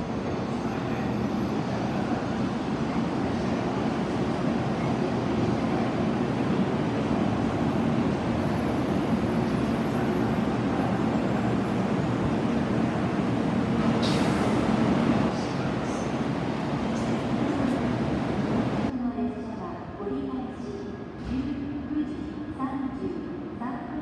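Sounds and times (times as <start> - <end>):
train running noise: 0.0 - 18.9.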